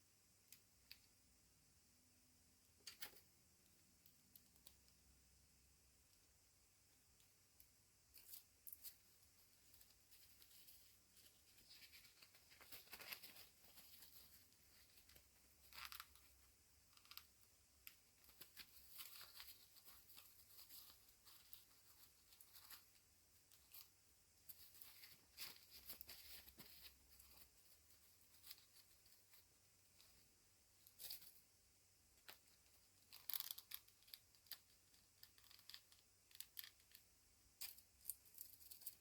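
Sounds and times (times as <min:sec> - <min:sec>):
plastic toy rustling and clicking: 0:32.2 - 0:39.0.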